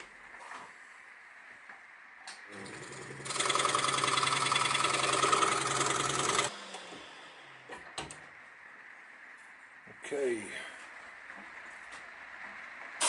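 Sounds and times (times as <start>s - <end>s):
scroll saw blade running: 2.9s - 6.9s.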